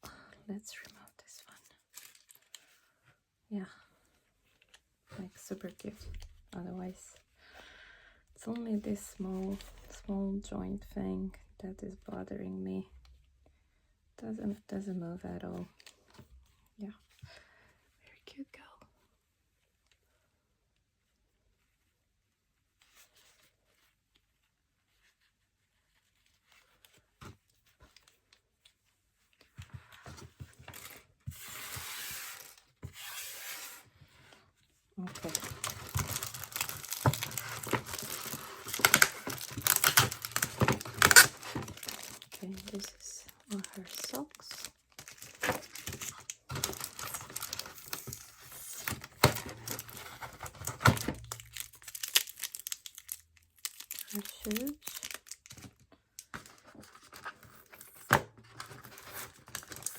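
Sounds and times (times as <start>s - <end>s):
packaging rustling: 35.0s - 59.9s
packaging tearing: 35.1s - 55.7s, 58.5s - 59.9s.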